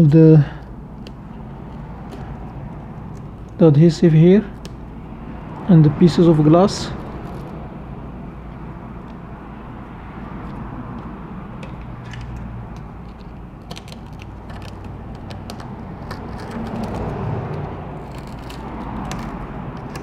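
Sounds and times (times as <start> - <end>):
low background hum: 0.0 - 20.0
tool clicking and scraping glass: 0.6 - 3.6, 10.4 - 20.0.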